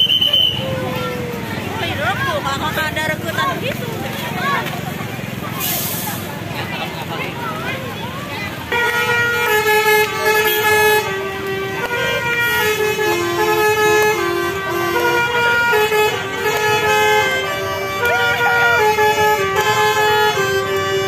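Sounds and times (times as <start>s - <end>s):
musical air horn playing tune: 8.6s - 21.0s.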